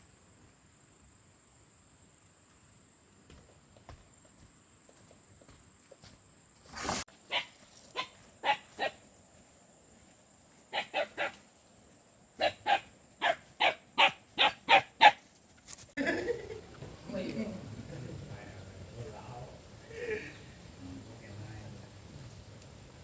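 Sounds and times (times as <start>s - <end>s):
dog barking: 7.3s - 9.0s, 10.7s - 11.4s, 12.4s - 15.2s.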